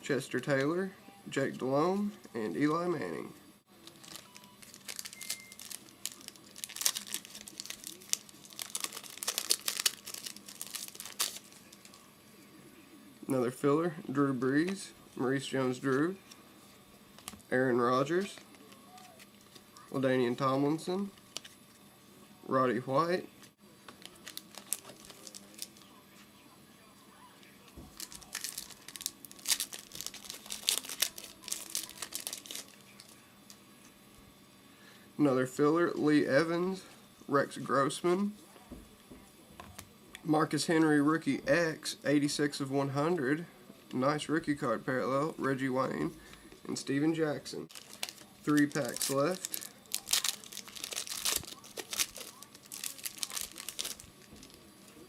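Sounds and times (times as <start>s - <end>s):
wrapper tearing and crinkling: 3.8s - 12.0s, 24.0s - 25.9s, 27.9s - 33.2s, 47.7s - 54.6s.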